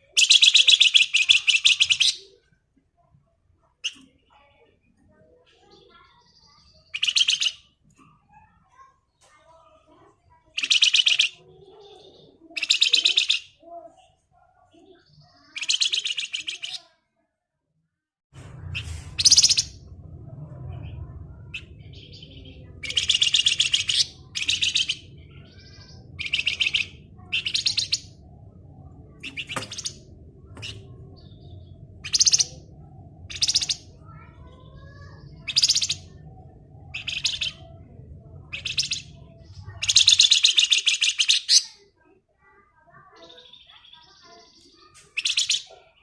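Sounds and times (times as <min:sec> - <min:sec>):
songbird chattering trills: 0:00.0 - 0:02.4, 0:05.5 - 0:07.7, 0:10.4 - 0:13.7, 0:14.8 - 0:16.9, 0:19.2 - 0:19.8, 0:20.9 - 0:41.9, 0:43.0 - 0:46.0
low steady hum: 0:18.4 - 0:40.4.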